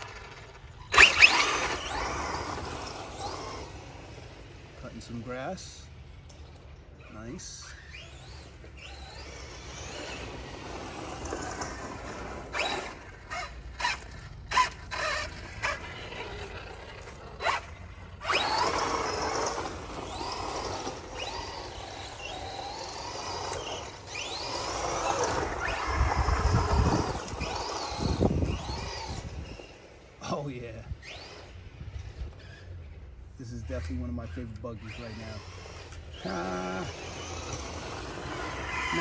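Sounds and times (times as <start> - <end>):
electric motor whining: 0.0 - 39.0.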